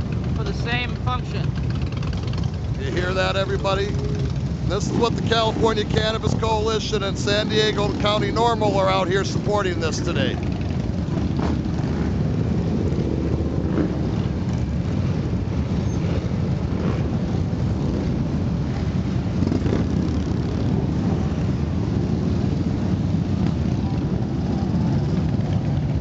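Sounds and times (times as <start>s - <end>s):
motorcycles riding past: 0.0s - 26.0s.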